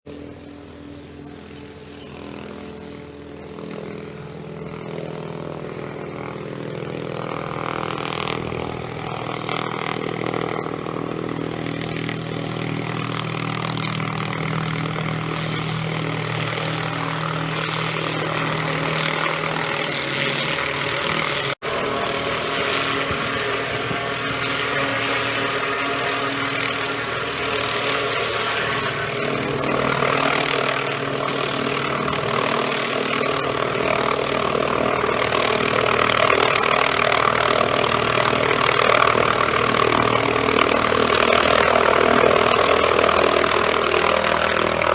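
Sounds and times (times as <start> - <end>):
helicopter rotors and turbine: 0.1 - 44.9.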